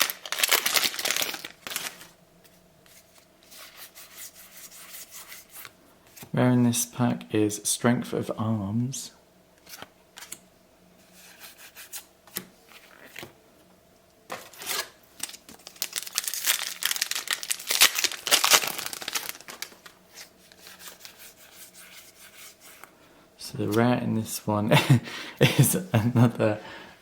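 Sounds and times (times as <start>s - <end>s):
wrapper tearing and crinkling: 0.0s - 2.2s, 14.3s - 21.2s.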